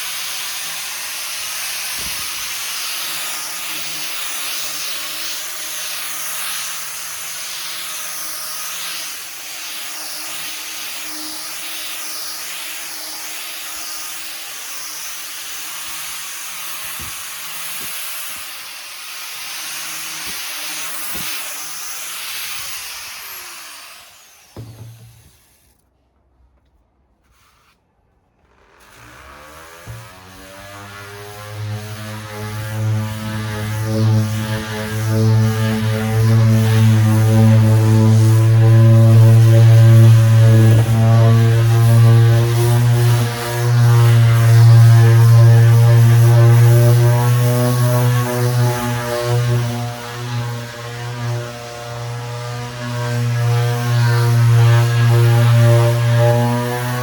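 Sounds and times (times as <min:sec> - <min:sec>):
orbital sander on wood: 0:00.0 - 0:25.8, 0:28.8 - 0:57.0
rising hum: 0:29.2 - 0:45.4.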